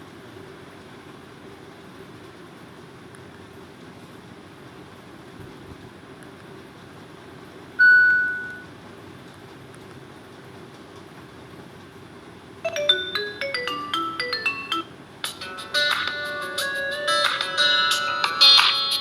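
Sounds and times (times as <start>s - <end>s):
electronic beep: 7.8s - 8.6s
marimba-like phone ringtone: 7.8s - 8.6s, 12.7s - 14.9s.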